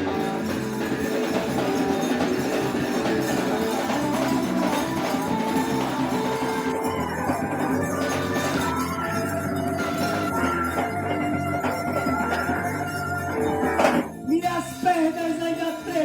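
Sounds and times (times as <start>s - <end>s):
guitar playing: 0.0s - 16.0s
jingling hand percussion: 0.0s - 16.0s.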